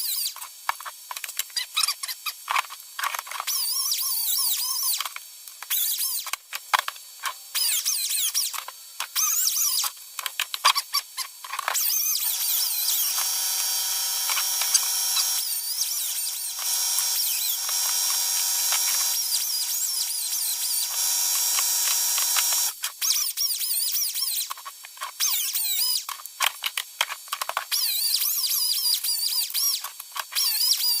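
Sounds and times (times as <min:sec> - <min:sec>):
power tool grinding whine: 0:11.8 - 0:22.8.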